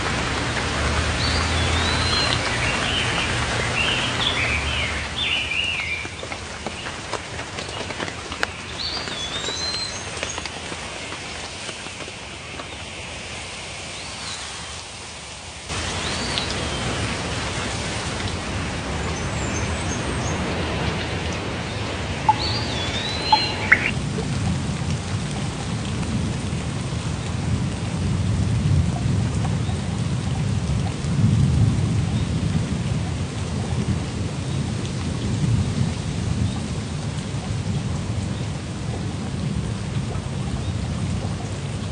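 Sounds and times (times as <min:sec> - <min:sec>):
steady rain: 0:00.0 - 0:41.9
rolling thunder rumble: 0:15.7 - 0:41.9
bird chirps: 0:22.2 - 0:23.9.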